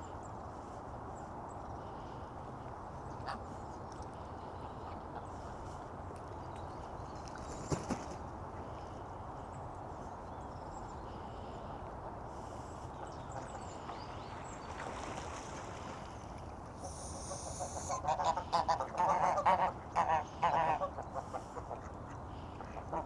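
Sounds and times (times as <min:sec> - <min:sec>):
background hiss: 0:07.4 - 0:19.4
waterfowl calling: 0:16.8 - 0:23.0.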